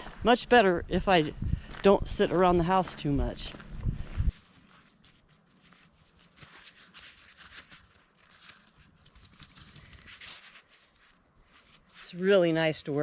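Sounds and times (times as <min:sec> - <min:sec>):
soft ticks and scuffs of handling gear: 0:04.3 - 0:12.7.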